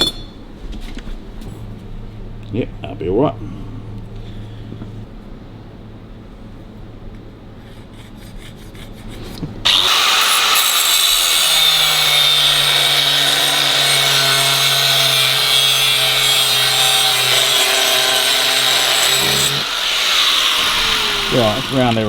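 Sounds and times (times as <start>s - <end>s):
low workshop hum: 0.0s - 22.0s
power grinder grinding steel: 9.7s - 22.0s.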